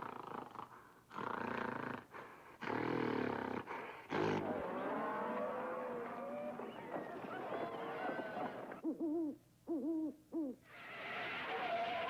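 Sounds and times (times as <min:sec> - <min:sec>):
roar-like growl: 0:02.6 - 0:06.6
whistling glides: 0:04.8 - 0:08.8.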